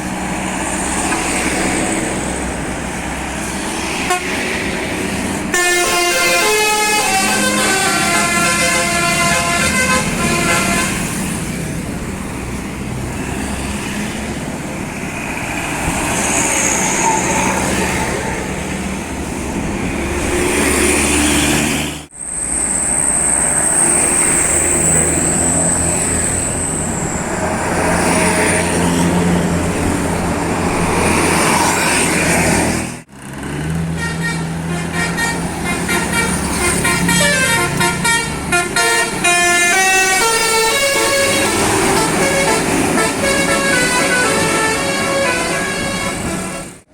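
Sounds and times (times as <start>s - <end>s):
buses passing: 0.0s - 46.9s
musical bus horns: 3.9s - 4.6s, 5.4s - 11.6s, 33.8s - 46.9s.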